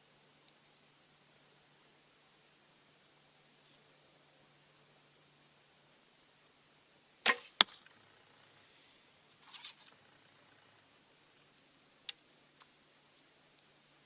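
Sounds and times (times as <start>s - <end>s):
arrow thudding into target: 7.3s - 8.0s
bowstring release: 7.3s - 10.1s
brief rustle: 8.6s - 10.2s
faint clicks: 12.0s - 13.7s.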